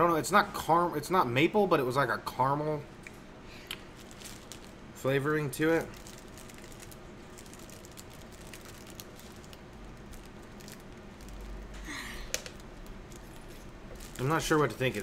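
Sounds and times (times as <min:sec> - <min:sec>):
snack package clicks and crinkles: 0:03.6 - 0:04.8, 0:05.8 - 0:11.7, 0:12.3 - 0:15.0
package rustle: 0:03.8 - 0:04.8, 0:05.8 - 0:11.7, 0:12.3 - 0:15.0.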